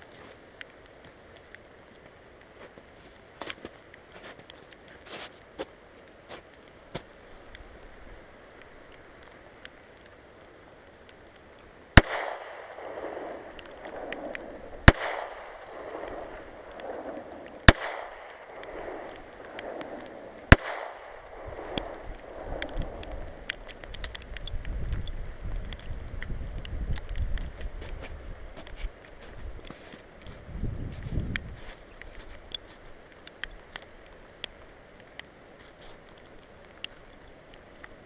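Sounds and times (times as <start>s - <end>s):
pistol shots: 12.0s - 22.4s
rolling echo: 12.0s - 23.6s.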